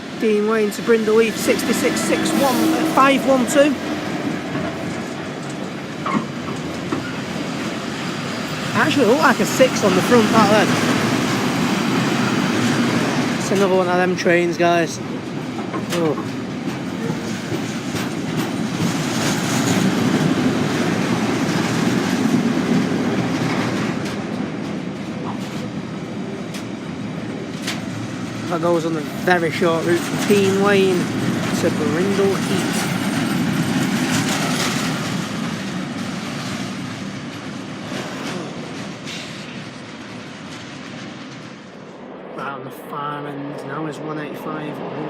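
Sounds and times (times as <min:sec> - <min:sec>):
train wheels running on rails: 0:00.0 - 0:45.0.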